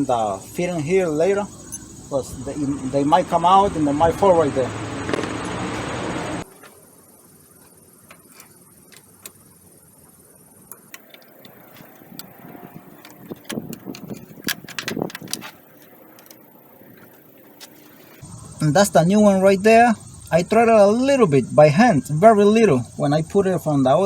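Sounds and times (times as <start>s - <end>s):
metal tools clicking and clinking: 10.8s - 18.2s.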